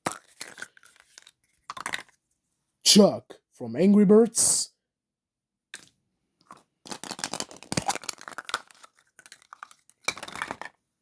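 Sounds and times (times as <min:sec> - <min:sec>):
plastic wrapper crinkling: 0:06.8 - 0:10.6.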